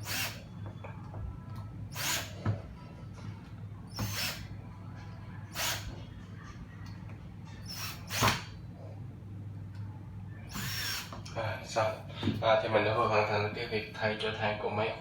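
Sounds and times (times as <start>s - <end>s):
cordless drill driving screws: 0.0s - 0.4s, 1.9s - 2.4s, 4.0s - 4.4s, 10.5s - 11.1s.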